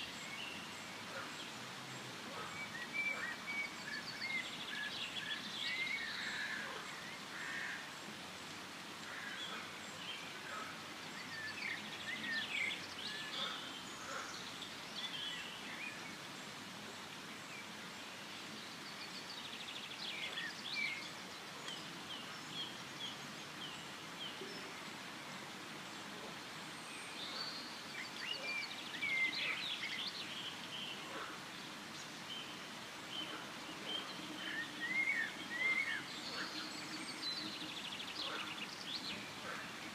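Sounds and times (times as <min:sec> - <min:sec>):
steady background hiss: 0:00.0 - 0:39.9
birds chirping and trilling: 0:09.0 - 0:17.9, 0:26.4 - 0:39.9.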